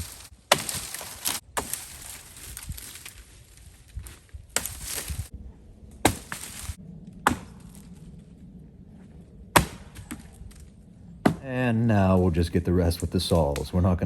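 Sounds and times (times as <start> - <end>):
axe chopping log: 0.0 - 2.2, 6.0 - 7.8, 9.5 - 10.4, 11.2 - 11.5
wood splitting crackle: 0.0 - 5.3, 5.9 - 8.4, 9.5 - 13.8.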